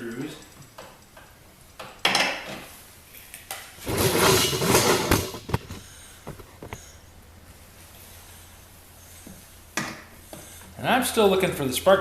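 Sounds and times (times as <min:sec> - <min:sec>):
rattling and scraping of tools: 0:00.0 - 0:07.0.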